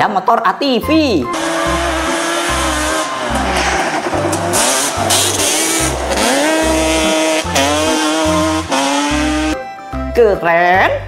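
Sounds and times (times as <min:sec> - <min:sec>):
music with bass beat: 0:01.2 - 0:09.6
motorbike engine revving: 0:01.3 - 0:09.6.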